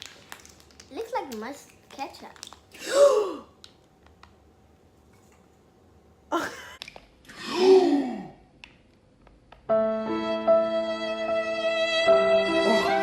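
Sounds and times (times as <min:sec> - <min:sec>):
bowed string music: 0:09.7 - 0:13.0.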